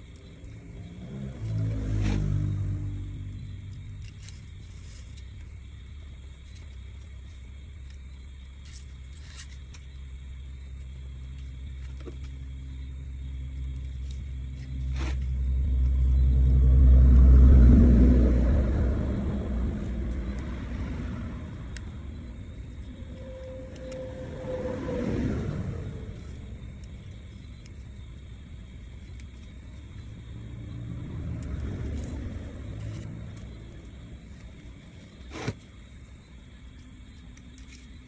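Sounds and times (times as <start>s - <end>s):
vehicle engine rumble passing by: 0.0s - 37.0s.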